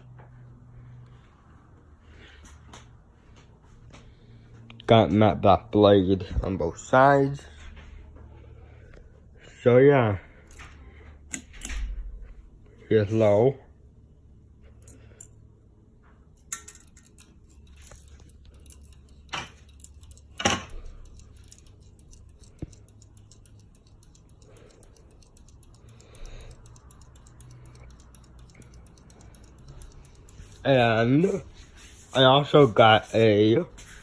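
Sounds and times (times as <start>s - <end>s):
ceiling fan humming: 0.0s - 34.0s
sharp clicks and ticking: 16.5s - 31.4s.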